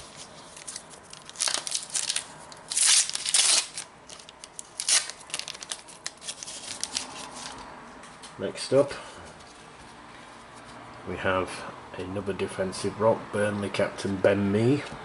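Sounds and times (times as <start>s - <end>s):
wrapper crinkling and tearing: 0.0s - 7.6s.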